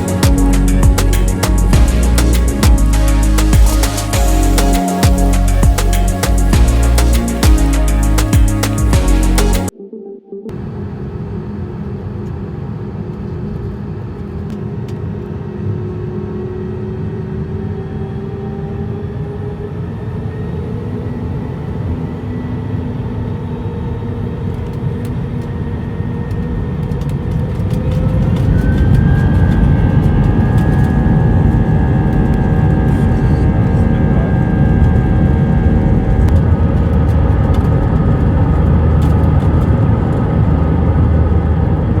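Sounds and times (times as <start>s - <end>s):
jet engine rumble inside cabin: 23.6s - 42.0s.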